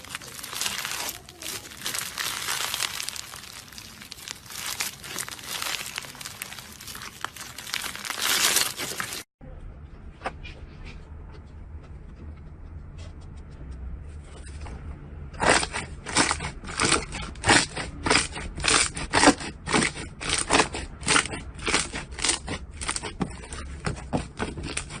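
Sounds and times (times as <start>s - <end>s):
slime squelching crunchily: 0.0s - 9.3s, 15.4s - 25.0s.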